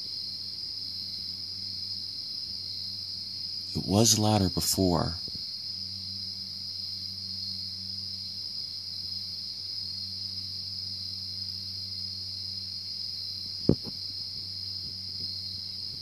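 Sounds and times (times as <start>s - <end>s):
brief knock: 13.7s - 14.0s.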